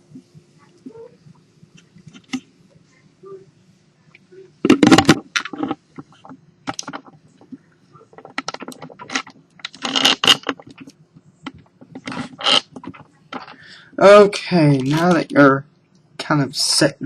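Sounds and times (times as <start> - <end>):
faint steady hum: 0.0 - 17.0
tripod clicks and rattles: 8.2 - 10.9.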